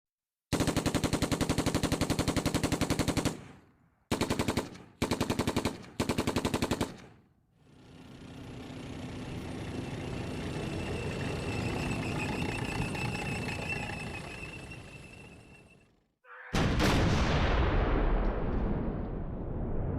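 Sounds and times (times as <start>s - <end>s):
automatic gunfire bursts: 0.5s - 7.2s.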